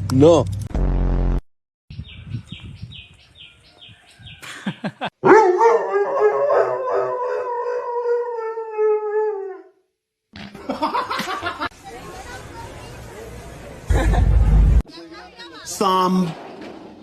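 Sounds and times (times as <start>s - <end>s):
dog howling: 5.2s - 9.8s.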